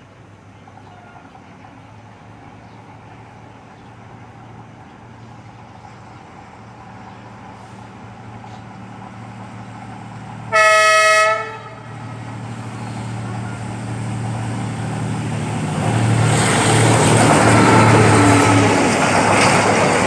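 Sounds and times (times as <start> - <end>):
locomotive engine hum: 0.0 - 20.0
train rumble: 0.0 - 20.0
locomotive horn blast: 10.5 - 13.6.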